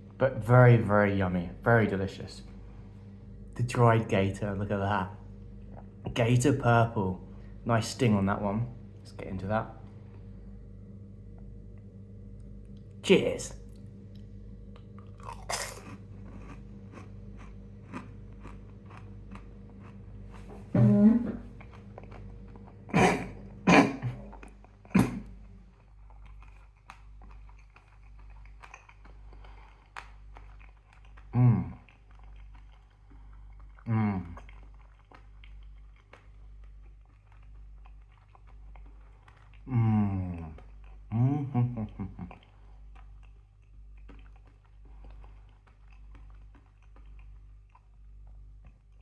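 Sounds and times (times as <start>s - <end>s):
chewing dried chilli: 11.3s - 20.7s, 21.5s - 49.0s
person humming: 20.6s - 21.5s, 31.3s - 31.8s, 33.9s - 34.4s, 39.7s - 42.3s
short vocal throat sound: 22.9s - 24.3s, 24.9s - 25.3s.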